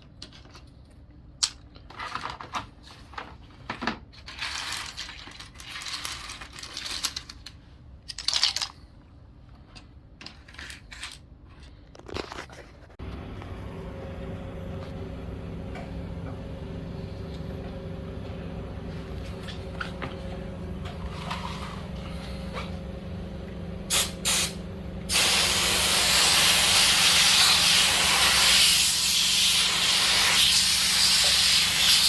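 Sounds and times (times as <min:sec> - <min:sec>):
plastic keyboard parts clattering: 0:01.4 - 0:08.8
low buzzing hum: 0:13.0 - 0:28.6
short bursts of hiss: 0:25.1 - 0:32.0.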